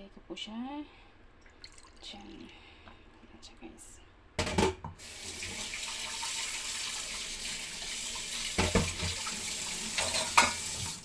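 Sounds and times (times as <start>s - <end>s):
tap water running: 1.4s - 2.6s, 4.4s - 11.0s.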